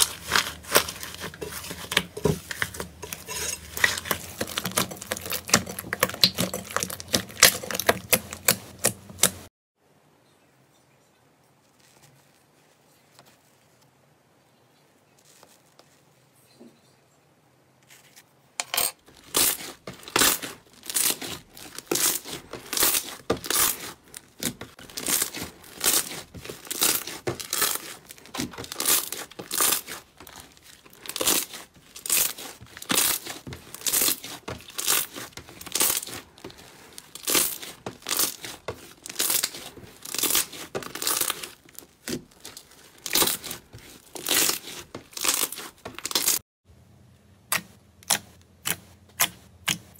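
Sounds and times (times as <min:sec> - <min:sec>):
slime squelching: 0:00.0 - 0:09.5, 0:19.0 - 0:46.4.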